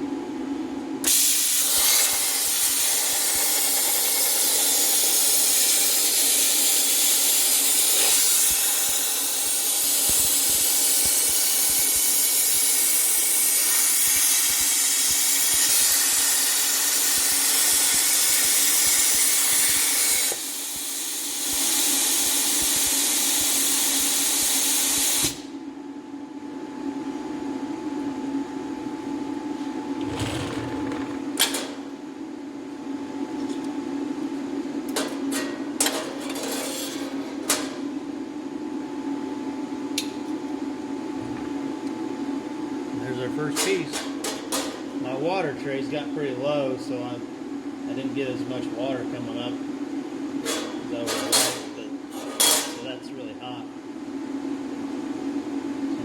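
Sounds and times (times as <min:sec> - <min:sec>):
plasma cutter hissing: 0:01.1 - 0:25.4
machine hum: 0:28.5 - 0:33.0.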